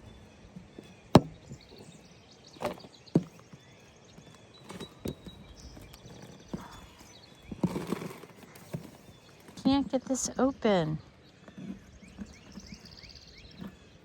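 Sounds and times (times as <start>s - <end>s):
hard objects knocking: 1.1s - 1.6s.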